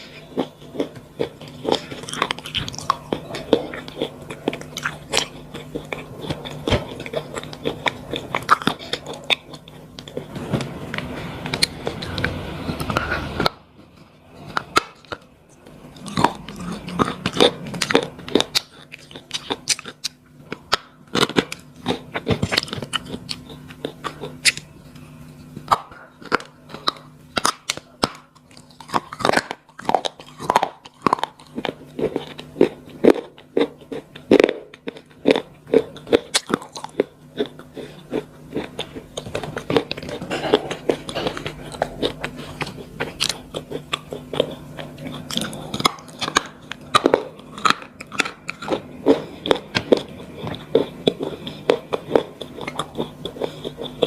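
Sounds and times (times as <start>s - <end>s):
slate pencils crunching: 14.0s - 24.7s, 25.7s - 54.0s.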